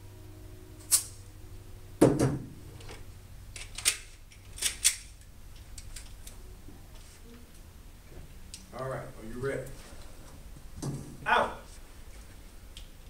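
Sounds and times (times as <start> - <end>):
handgun metallic clicks: 3.6 - 6.1.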